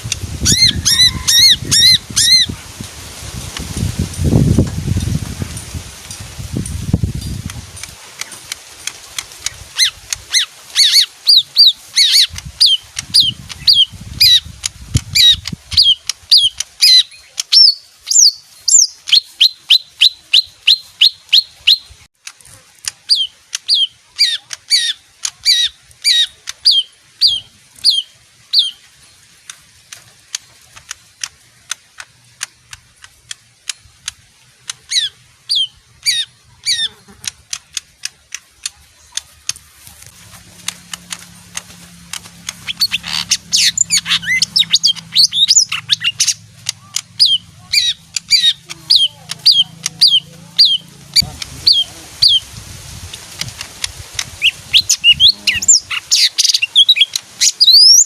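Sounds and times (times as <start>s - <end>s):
songbird chirping: 0.0s - 58.0s
faint clicks: 22.2s - 26.7s, 28.9s - 35.1s, 37.0s - 51.5s.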